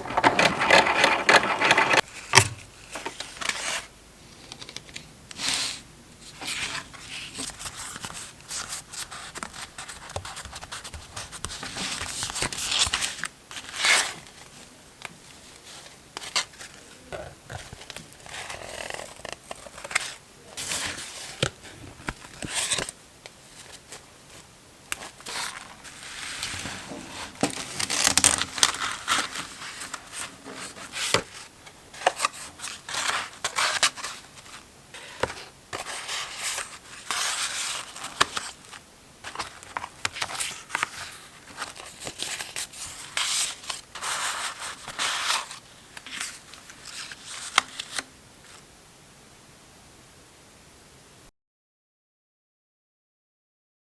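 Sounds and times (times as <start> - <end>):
paper rustling and crinkling: 0.0 - 3.9, 25.0 - 48.6.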